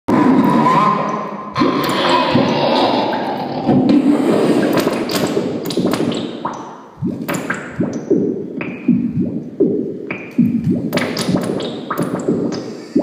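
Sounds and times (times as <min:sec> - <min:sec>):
crackling noise music: 0:01.6 - 0:13.0.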